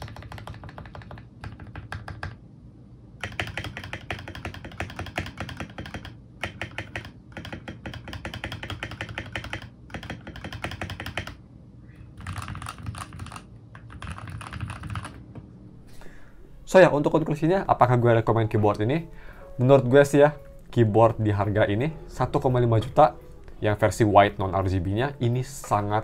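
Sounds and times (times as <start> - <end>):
mechanical keyboard typing: 0.0 - 2.4, 3.2 - 11.4, 12.2 - 15.2.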